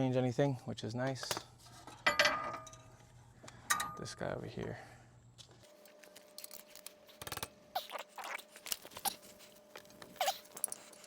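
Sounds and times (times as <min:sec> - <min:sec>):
short squeaks: 0:10.1 - 0:10.9.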